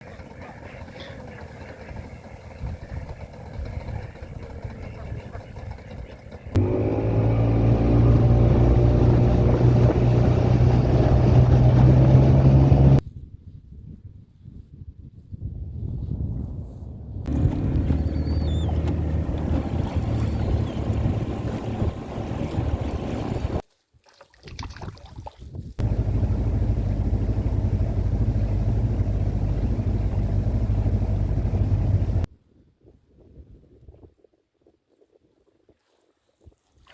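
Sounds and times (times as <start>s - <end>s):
boat motor running: 0.0s - 13.0s, 17.3s - 23.6s, 25.8s - 32.3s
faint low rumble: 25.8s - 32.3s.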